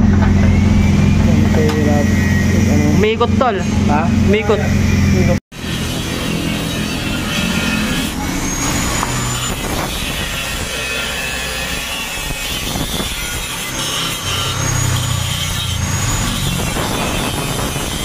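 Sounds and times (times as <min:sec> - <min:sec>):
faint high whine: 0:00.0 - 0:05.3
vehicle engine running: 0:00.0 - 0:09.4.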